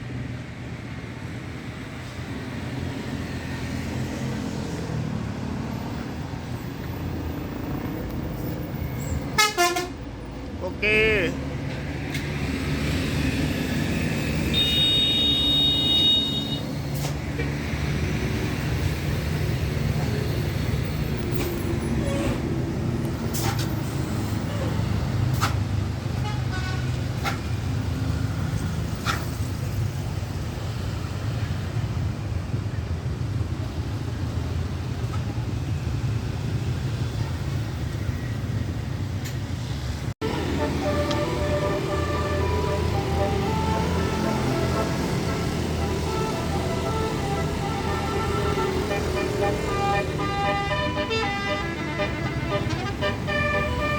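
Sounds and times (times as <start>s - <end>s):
traffic engine and tyre rumble: 0.0s - 53.9s
bus multi-tone horn chord: 9.4s - 10.0s, 14.4s - 16.8s, 40.2s - 53.9s.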